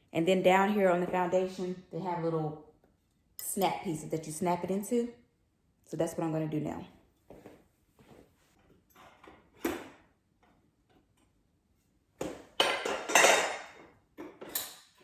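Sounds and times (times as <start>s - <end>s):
metal tubes clinking and rattling: 12.6s - 13.8s.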